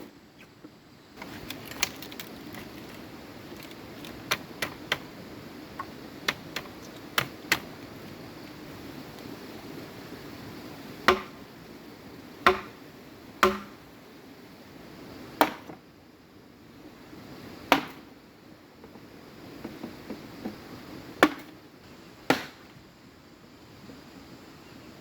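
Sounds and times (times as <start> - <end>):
tool striking bamboo: 4.0 - 5.1, 5.8 - 7.8, 11.0 - 11.5, 12.4 - 12.8, 13.4 - 13.8, 15.4 - 15.8, 17.7 - 18.0, 21.2 - 21.6, 22.3 - 22.6.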